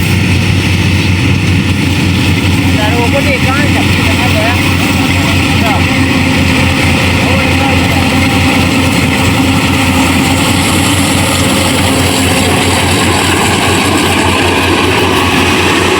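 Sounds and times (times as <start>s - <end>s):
combine harvester diesel engine: 0.0s - 15.9s.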